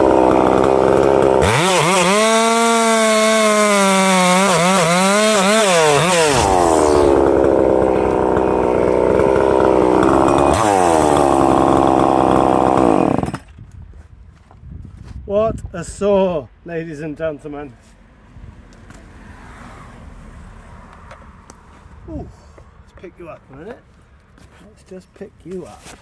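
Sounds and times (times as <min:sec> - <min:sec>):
chainsaw cutting wood: 0:00.0 - 0:13.6.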